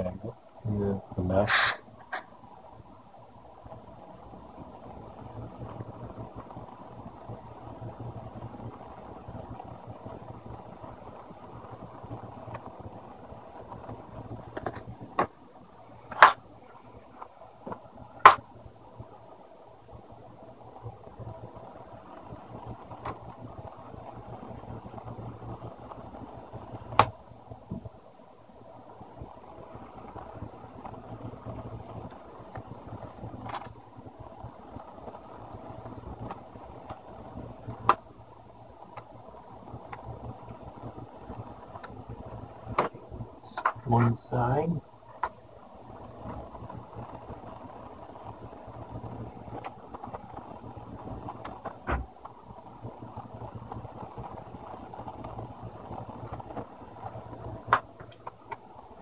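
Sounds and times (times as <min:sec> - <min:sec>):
steady low hum: 0:00.0 - 0:59.0.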